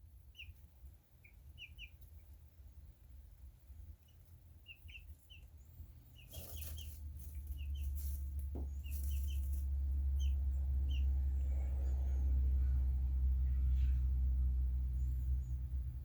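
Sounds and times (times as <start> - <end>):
low rumble: 6.8 - 16.0.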